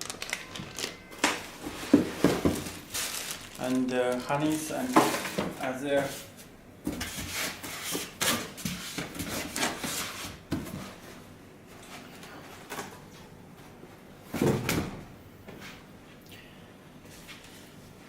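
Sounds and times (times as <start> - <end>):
clicks knocks and rustles unpacking: 0.0 - 5.6.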